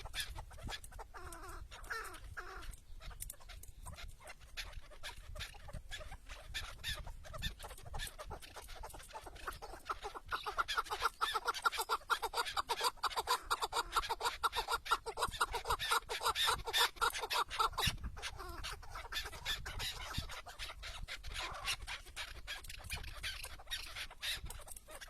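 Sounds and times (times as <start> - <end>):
partridge clucking calls: 0.0 - 25.0.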